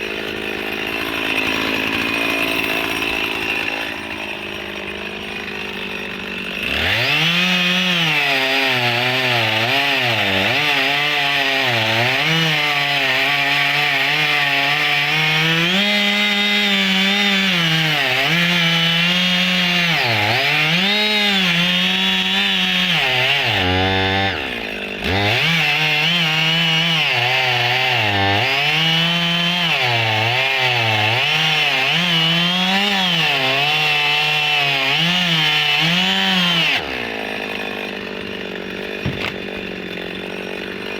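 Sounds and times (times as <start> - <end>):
chainsaw cutting logs: 0.0 - 40.9.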